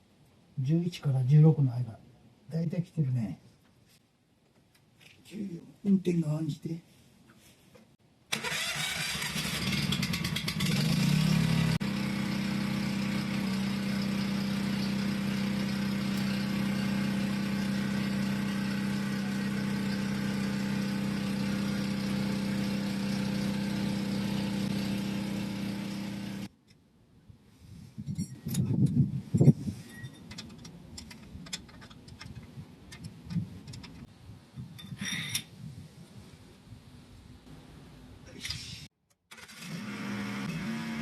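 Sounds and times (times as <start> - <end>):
snowblower engine running: 8.3 - 26.5, 39.4 - 41.0.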